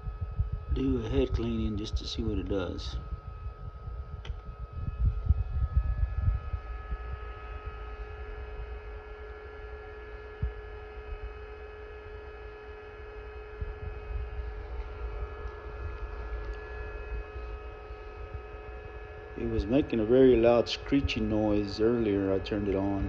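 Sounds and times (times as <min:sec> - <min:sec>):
low rumbling thumps: 0:00.0 - 0:08.8
printer electrical hum: 0:00.0 - 0:23.0.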